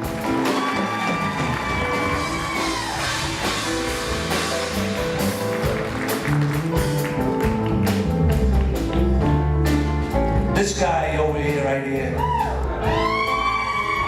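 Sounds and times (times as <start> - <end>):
audience applause: 0.0 - 9.0
rock band playing: 0.0 - 14.0.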